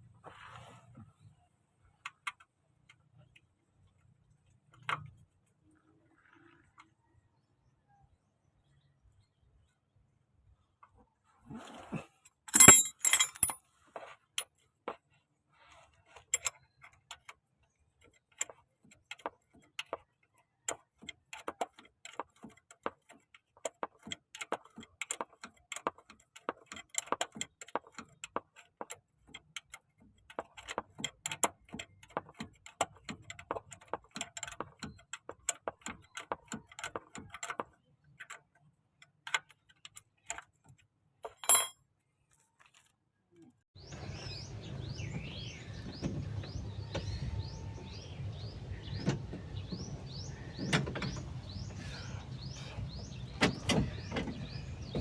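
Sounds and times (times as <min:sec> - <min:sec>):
hand tools clinking on metal: 0:12.5 - 0:13.6
metal clanks: 0:12.5 - 0:13.6, 0:43.9 - 0:55.0.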